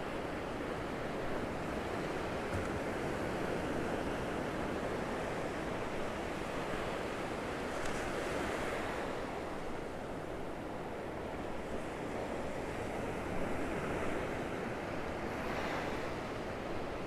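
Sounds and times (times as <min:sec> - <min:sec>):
surf breaking waves: 0:01.6 - 0:17.0.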